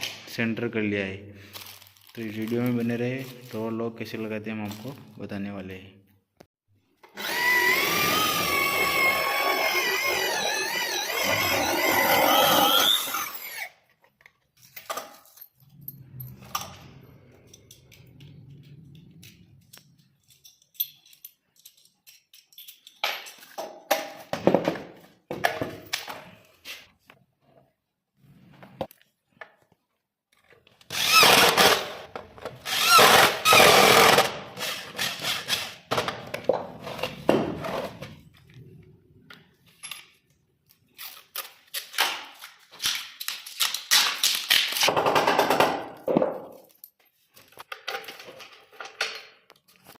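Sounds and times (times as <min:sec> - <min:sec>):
power drill boring into wood: 0:07.1 - 0:13.8, 0:30.9 - 0:35.8.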